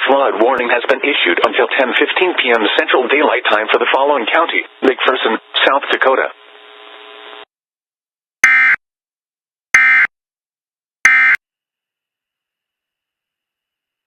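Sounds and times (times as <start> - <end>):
short electronic data bursts: 8.4 - 8.8.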